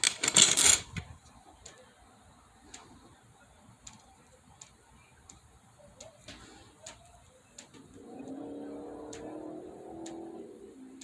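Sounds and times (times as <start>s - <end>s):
faint sharp ticks: 6.0s - 11.0s.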